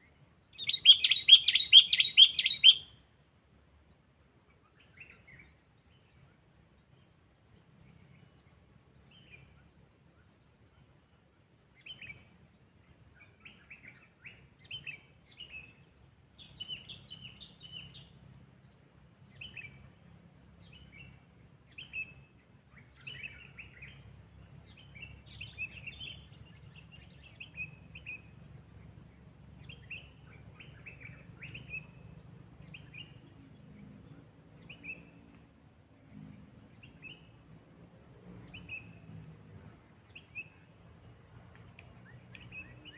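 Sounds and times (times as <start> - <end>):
bird chirping: 0.0 - 3.0, 4.4 - 37.6, 38.2 - 42.9
low steady hum: 0.0 - 42.9.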